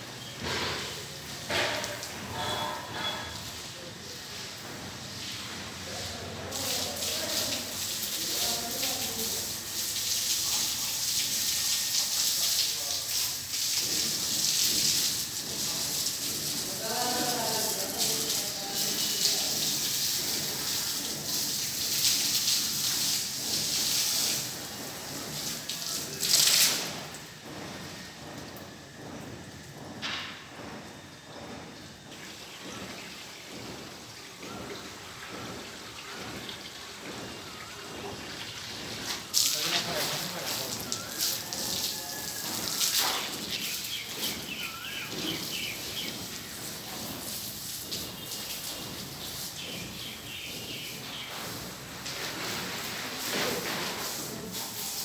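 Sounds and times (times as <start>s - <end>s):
rain-like hiss: 0.0s - 28.0s, 34.0s - 55.0s
faint voices: 5.6s - 22.0s, 24.4s - 55.0s
high-pitched hiss: 10.4s - 19.9s.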